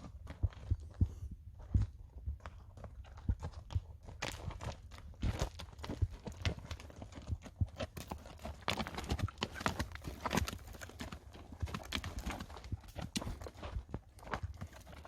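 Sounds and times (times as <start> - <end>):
horse hooves clopping: 0.0 - 15.0.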